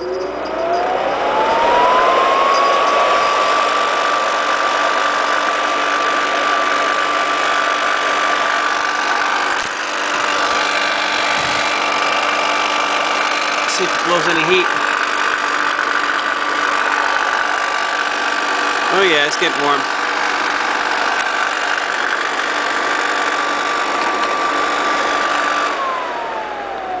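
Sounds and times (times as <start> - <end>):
blowing air rush: 0.0 - 5.8, 9.1 - 13.7
hair dryer fan motor whine: 0.0 - 27.0.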